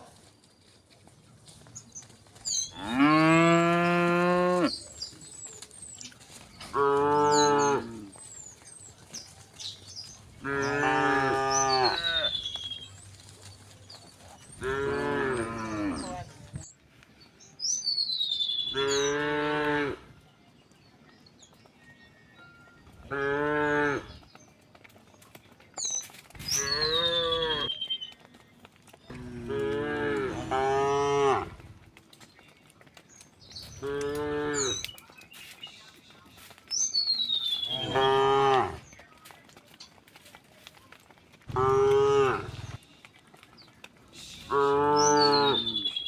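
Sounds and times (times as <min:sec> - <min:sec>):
cattle mooing: 0:10.4 - 0:12.4, 0:14.6 - 0:16.4, 0:29.1 - 0:31.6, 0:41.5 - 0:42.8.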